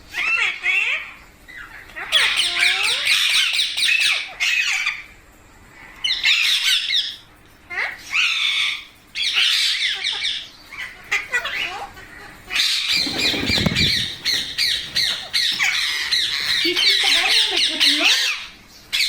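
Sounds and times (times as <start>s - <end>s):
low rustling bump: 12.9s - 16.9s
parakeets squawking and chattering: 12.9s - 18.4s.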